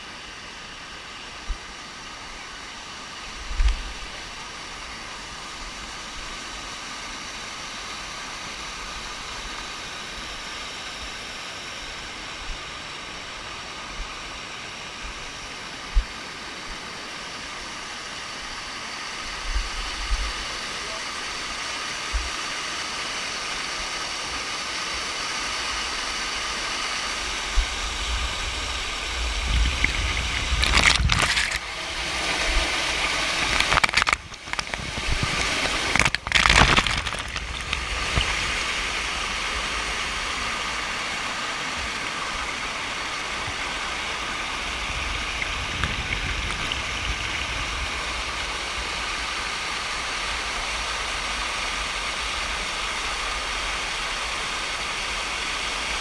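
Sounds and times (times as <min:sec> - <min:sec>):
waterfall rushing: 0:20.8 - 0:56.0.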